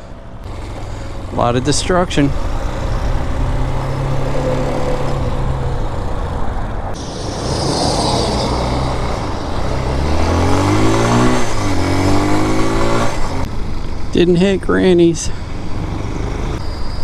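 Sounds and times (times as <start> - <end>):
dirt bike engine revving: 0.4 - 13.5.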